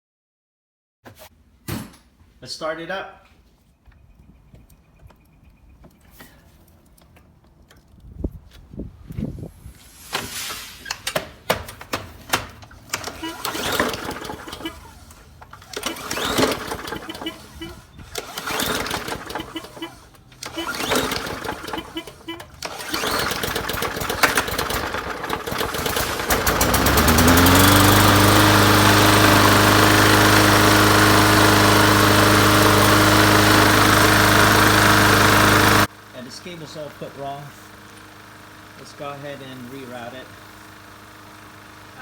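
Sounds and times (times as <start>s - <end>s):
lawn mower engine running: 9.6s - 42.0s
recoil starter pulls: 9.9s - 42.0s.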